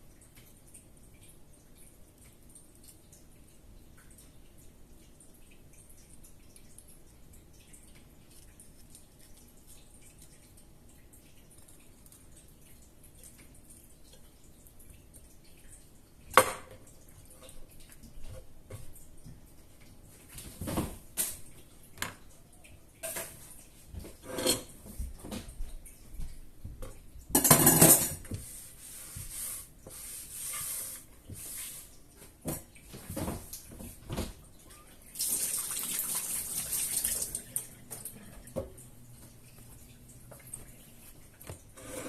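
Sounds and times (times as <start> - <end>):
dishes and cutlery clinking: 24.2 - 24.8, 27.4 - 28.3.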